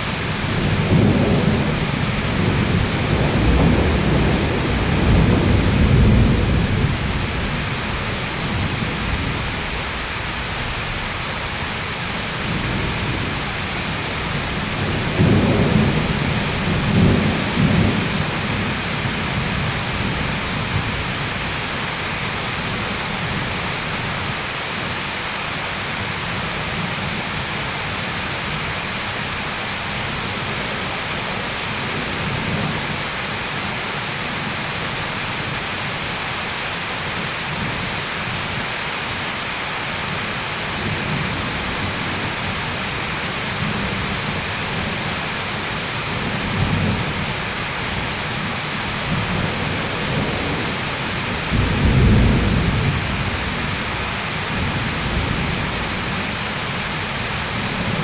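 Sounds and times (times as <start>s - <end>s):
steady rain: 0.0s - 58.0s
low thunder rumbles: 0.2s - 21.5s, 47.9s - 58.0s.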